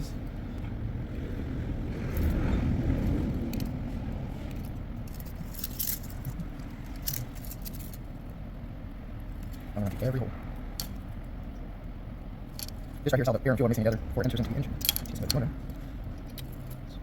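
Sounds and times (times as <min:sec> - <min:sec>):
low rumble: 0:00.0 - 0:13.0
thin metal wires clicking and jangling: 0:04.5 - 0:08.1, 0:12.5 - 0:13.1, 0:14.6 - 0:17.0.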